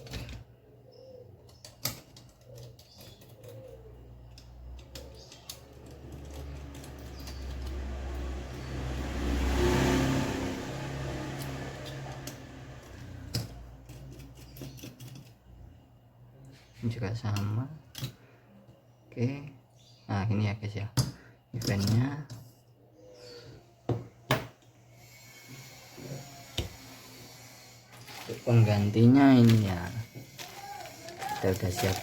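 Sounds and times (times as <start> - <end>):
passing vehicle engine rumble: 6.2 - 13.3.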